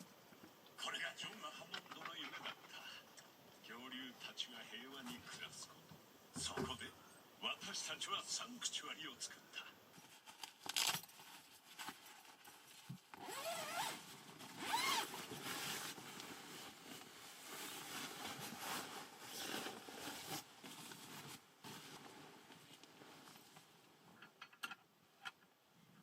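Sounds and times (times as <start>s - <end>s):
zipper being pulled: 13.1s - 20.5s.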